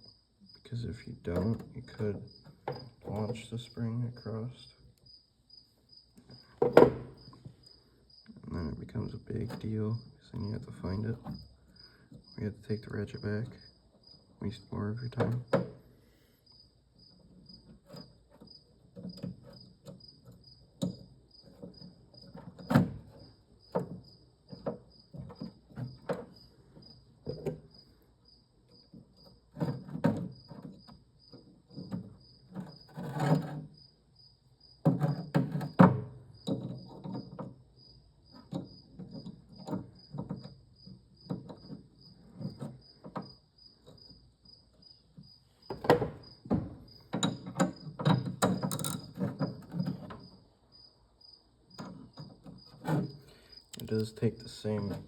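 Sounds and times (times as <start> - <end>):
metal parts clicking and knocking: 45.7 - 50.3.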